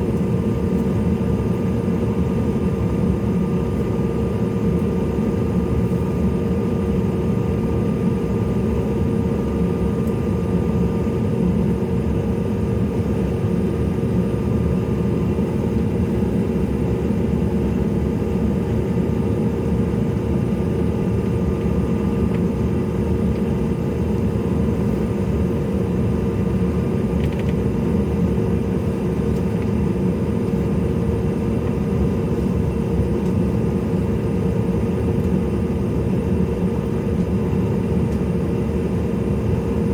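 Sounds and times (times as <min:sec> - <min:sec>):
jet cabin rumble and hum: 0:00.0 - 0:39.9.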